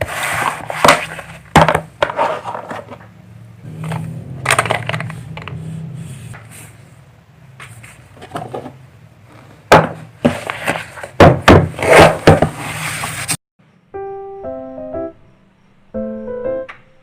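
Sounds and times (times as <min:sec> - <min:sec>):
soft piano music: 0:13.8 - 0:17.0.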